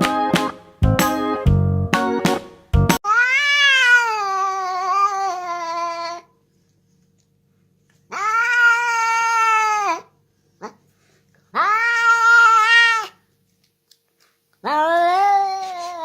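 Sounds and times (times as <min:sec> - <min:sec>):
cat meowing: 0:03.0 - 0:06.3, 0:08.1 - 0:10.1, 0:11.5 - 0:13.2, 0:14.6 - 0:16.0.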